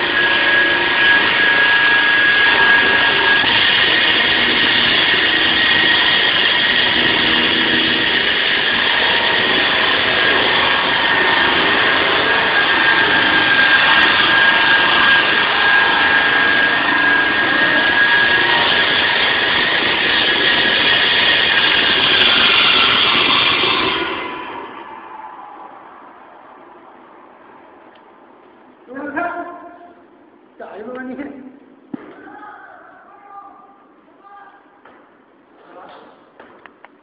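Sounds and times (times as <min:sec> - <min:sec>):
concrete saw running: 0:00.0 - 0:25.1.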